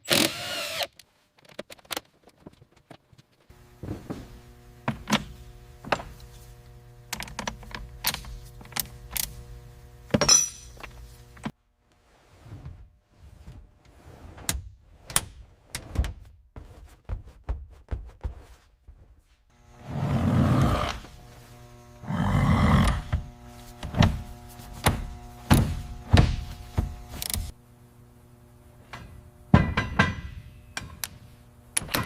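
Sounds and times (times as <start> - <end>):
steady hum: 3.5 - 11.5, 19.5 - 32.0.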